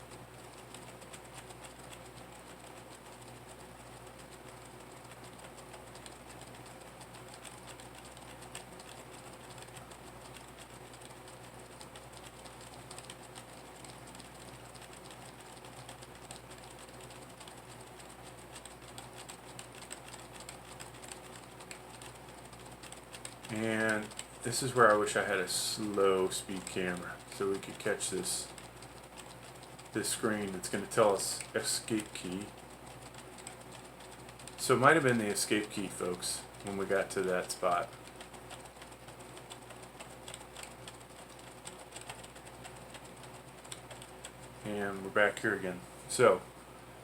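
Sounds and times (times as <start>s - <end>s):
faint steady hum: 0.0s - 47.0s
keyboard key tapping: 37.7s - 44.4s.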